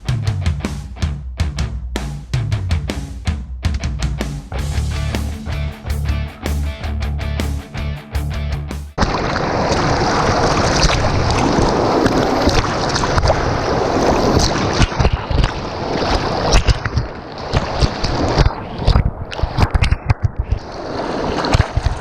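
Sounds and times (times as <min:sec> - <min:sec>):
rushing water: 0:09.0 - 0:22.0.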